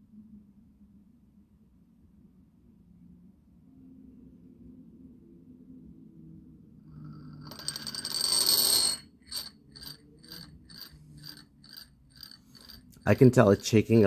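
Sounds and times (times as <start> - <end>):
spinning top ringing scrape: 6.9 - 14.0
spinning top ringing clinks: 7.2 - 14.0.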